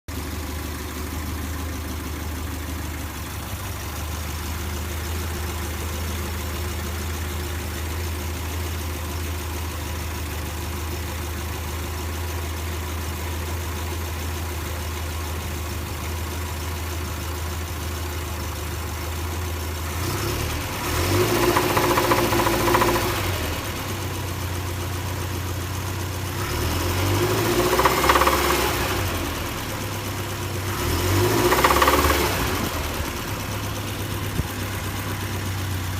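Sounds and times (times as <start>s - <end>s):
car engine idling with knock: 0.1s - 35.9s
car engine revving: 19.8s - 24.2s, 26.3s - 35.9s.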